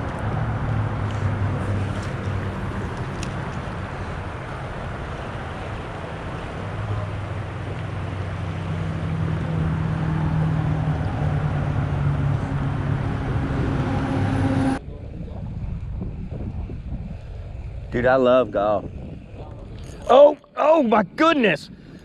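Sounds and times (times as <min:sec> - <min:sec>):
engine humming: 0:00.0 - 0:18.2.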